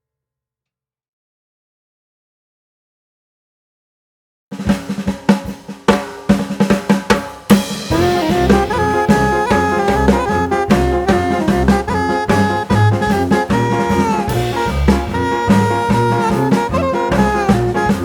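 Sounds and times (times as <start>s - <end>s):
solo drum kit: 4.5s - 18.0s
swing jazz band with horns: 6.0s - 18.0s.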